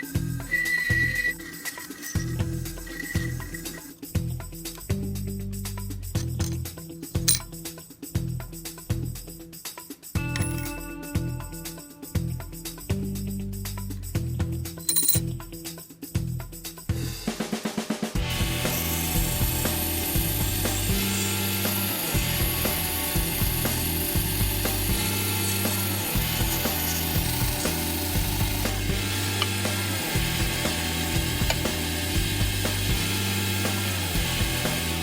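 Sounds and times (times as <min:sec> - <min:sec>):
hand tools working metal: 0:00.0 - 0:03.9, 0:10.3 - 0:10.8, 0:18.4 - 0:35.0
background music with bass line: 0:02.2 - 0:17.4, 0:18.2 - 0:35.0.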